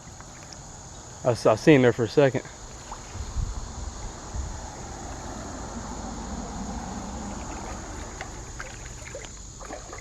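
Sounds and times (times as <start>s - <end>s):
creek water sloshing: 2.6s - 10.0s
steady low rumble: 3.0s - 9.6s
small splashes and clicks: 7.4s - 10.0s.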